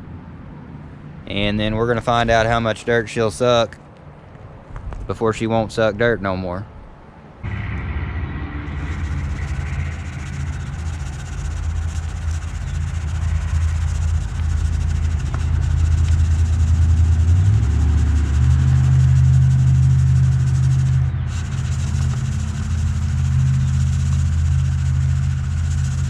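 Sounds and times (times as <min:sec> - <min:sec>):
diesel engine running: 0:07.4 - 0:26.0.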